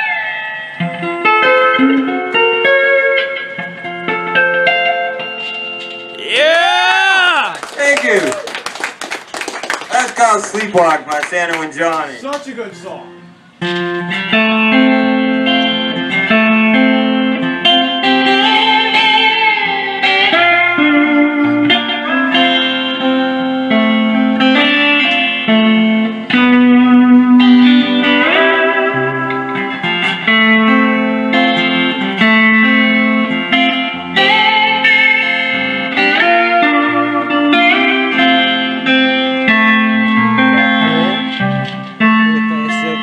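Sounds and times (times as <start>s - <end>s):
slide guitar lead: 0.0s - 8.2s, 12.8s - 43.0s
bass line: 39.5s - 42.6s.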